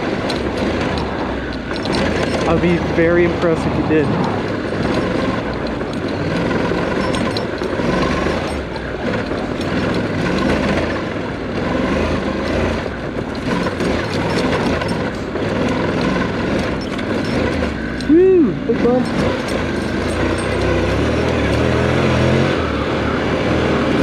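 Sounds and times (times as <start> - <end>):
motorcycle engine running: 0.0 - 24.0
wind and ride noise: 0.0 - 24.0.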